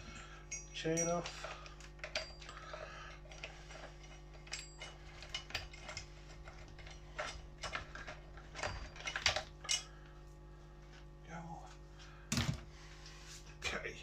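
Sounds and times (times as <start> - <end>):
metallic chain clicks and rattles: 0.0 - 9.9.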